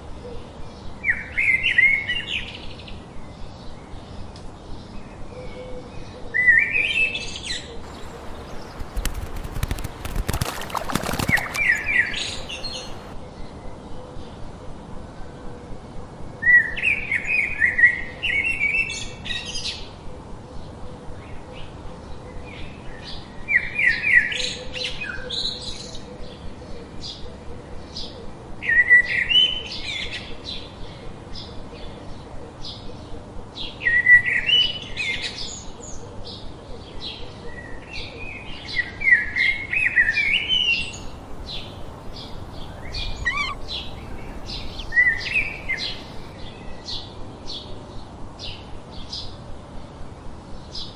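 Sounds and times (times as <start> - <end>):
bird chips: 7.8 - 13.2, 41.0 - 46.3
songbird singing high notes: 40.9 - 46.3.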